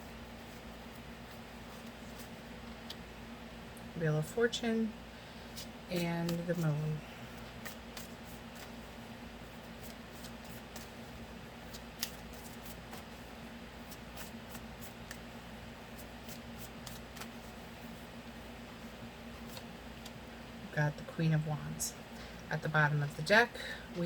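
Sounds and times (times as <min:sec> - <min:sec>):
faint steady hum: 0:00.0 - 0:24.0
cards clicking and tapping: 0:11.7 - 0:13.1, 0:16.3 - 0:17.4.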